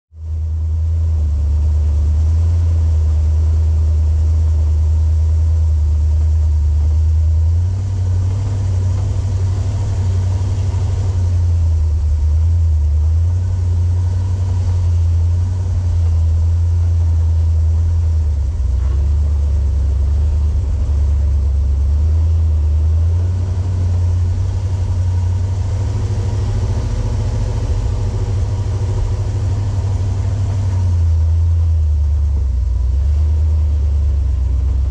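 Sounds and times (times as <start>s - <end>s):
vehicle engine low rumble: 0.1s - 34.9s.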